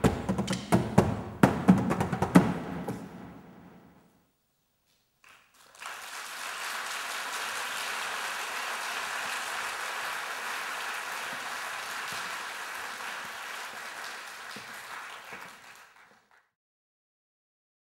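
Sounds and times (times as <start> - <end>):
audience applauding: 5.2 - 16.5.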